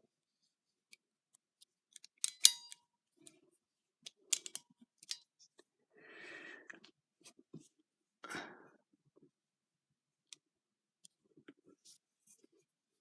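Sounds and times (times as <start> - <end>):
knife blade snapping shut: 2.2 - 2.8, 4.4 - 5.2
knife lock clicks: 2.2 - 2.8, 4.3 - 5.2.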